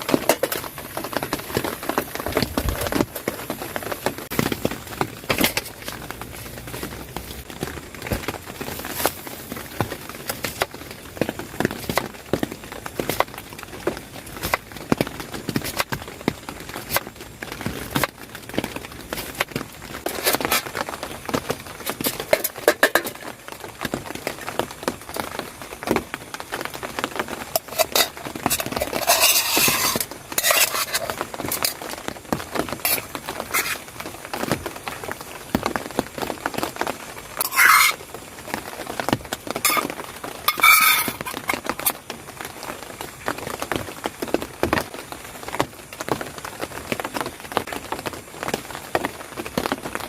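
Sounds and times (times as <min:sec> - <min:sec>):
rain pattering: 0:00.0 - 0:50.0
metal utensils scraping a pot: 0:27.6 - 0:31.9, 0:32.8 - 0:33.8, 0:37.4 - 0:38.0, 0:39.6 - 0:39.9, 0:40.5 - 0:41.9.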